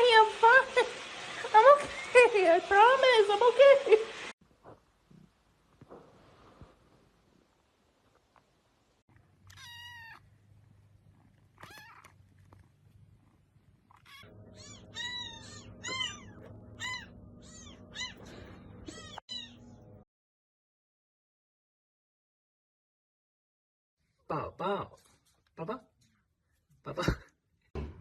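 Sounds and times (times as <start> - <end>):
cat meowing: 9.5 - 10.3, 11.5 - 12.2, 13.9 - 19.7.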